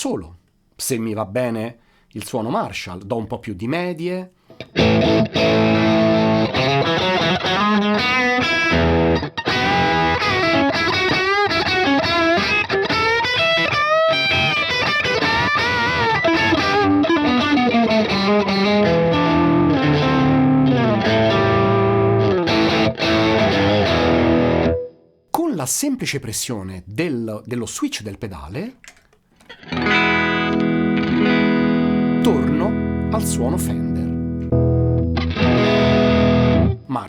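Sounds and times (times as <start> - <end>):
overdriven electric guitar solo: 4.5 - 25.0, 28.9 - 36.8.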